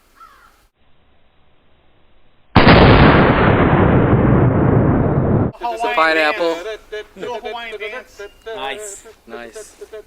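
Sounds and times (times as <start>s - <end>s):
very loud explosion blast: 2.6s - 5.6s.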